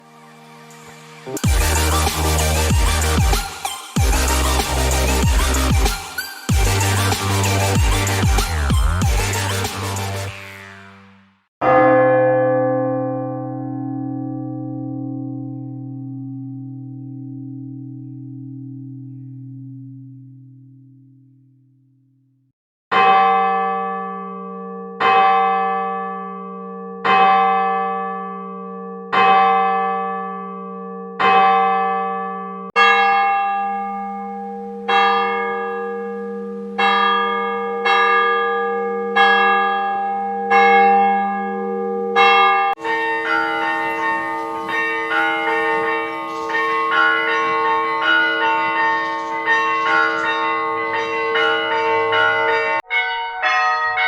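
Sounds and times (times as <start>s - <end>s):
church bells pealing: 0.8s - 10.7s, 11.6s - 19.6s, 23.0s - 54.0s
church bell tolling: 11.6s - 21.2s, 22.9s - 54.0s.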